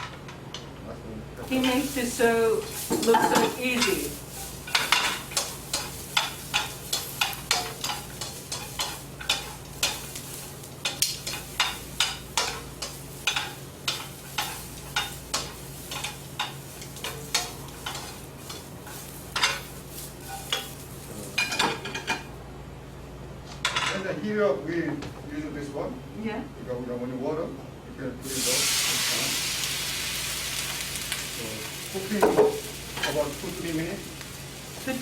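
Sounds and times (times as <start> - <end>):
vegetables sizzling in a pan: 1.4 - 22.4, 28.2 - 35.0.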